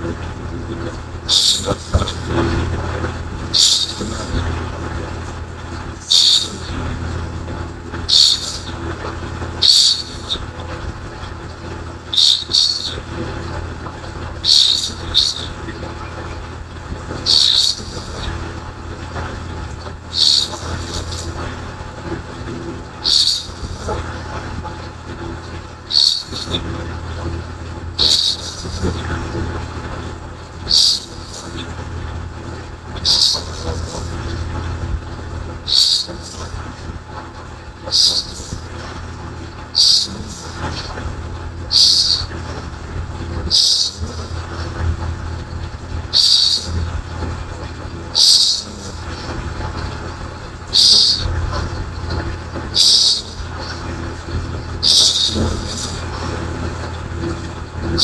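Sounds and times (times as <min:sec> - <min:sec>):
low steady hum: 0:00.0 - 0:58.0
hissing snoring breaths: 0:17.3 - 0:18.3, 0:20.1 - 0:21.4, 0:23.0 - 0:24.0, 0:28.0 - 0:29.0, 0:33.0 - 0:34.1.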